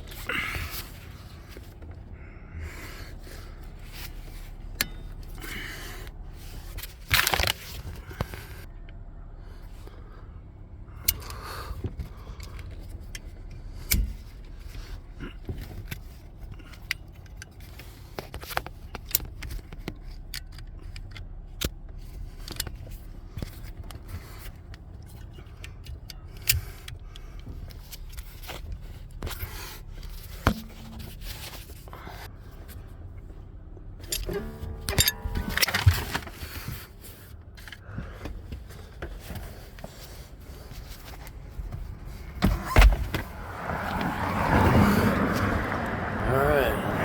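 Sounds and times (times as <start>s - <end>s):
low steady rumble: 0.0s - 47.0s
strap webbing scraping: 22.0s - 32.9s, 34.0s - 45.6s
ratchet buckles clicking and jingling: 34.0s - 36.4s.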